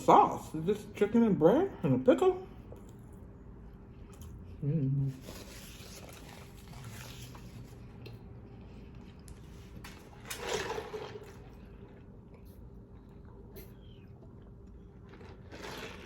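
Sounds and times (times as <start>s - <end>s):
soft chewing: 2.5s - 9.8s, 11.4s - 16.0s.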